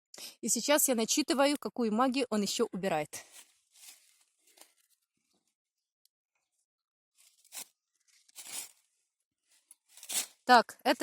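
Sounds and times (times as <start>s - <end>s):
faint crunching rustles: 3.2s - 5.5s, 7.2s - 10.5s.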